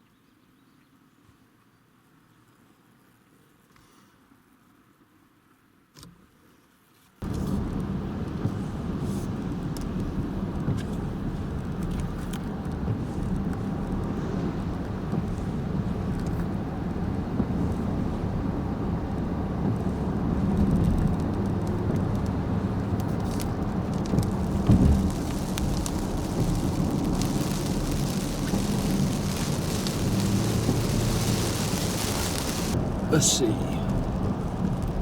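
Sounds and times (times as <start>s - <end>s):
car engine and road noise: 7.2s - 35.0s
raindrops pattering on car: 7.2s - 35.0s
low thump: 24.6s - 25.1s.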